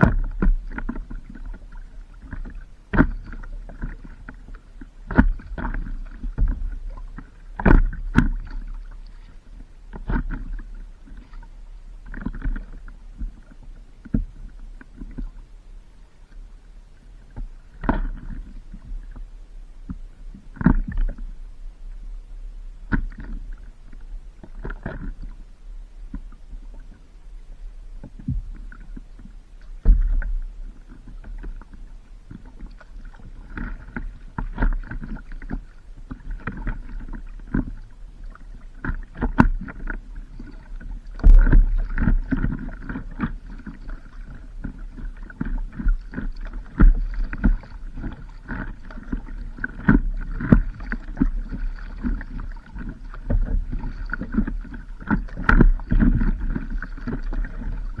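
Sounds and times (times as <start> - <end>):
paddle splashing through water: 0.0 - 15.4, 28.0 - 58.0
low rumble of wind: 0.0 - 58.0
water slapping against board: 40.6 - 58.0.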